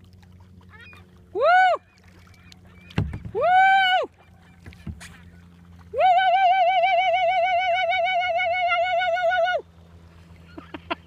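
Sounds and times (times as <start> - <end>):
woman yelling woo: 1.3 - 1.9, 3.3 - 4.1, 5.9 - 9.6.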